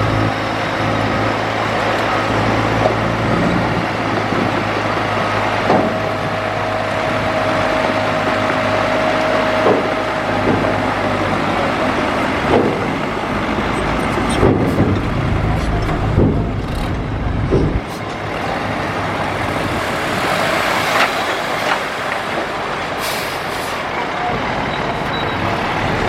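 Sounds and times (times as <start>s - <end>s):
heavy diesel engine running: 0.0s - 26.0s
metal knocks and clanks: 14.0s - 18.2s.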